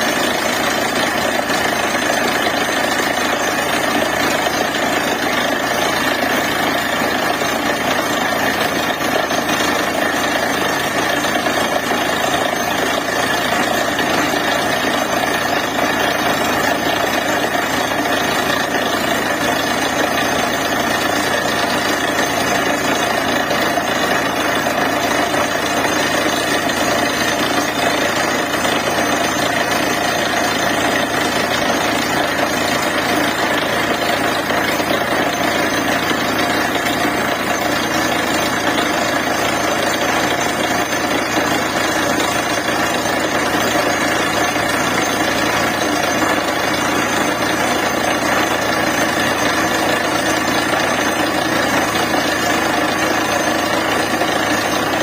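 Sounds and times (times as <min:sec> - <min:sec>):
drilling machine running: 0:00.0 - 0:55.0.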